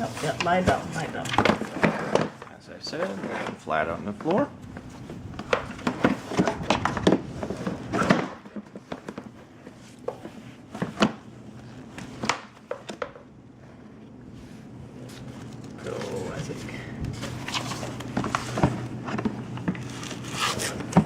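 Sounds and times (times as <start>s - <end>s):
plastic parts knocking and clattering: 0.4s - 4.4s, 5.2s - 11.3s.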